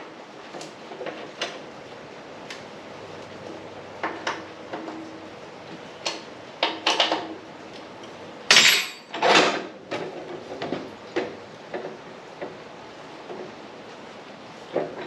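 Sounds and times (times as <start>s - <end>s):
metal tools clanking: 8.5s - 9.6s.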